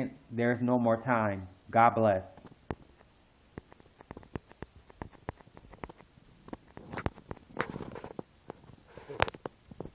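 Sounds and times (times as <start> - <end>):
small clicks and taps: 2.6 - 9.9.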